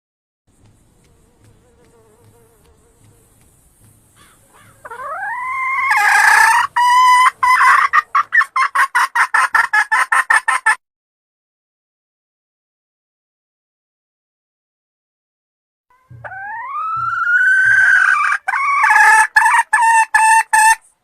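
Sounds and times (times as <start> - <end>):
hen cackling: 4.1 - 10.8, 15.9 - 20.8.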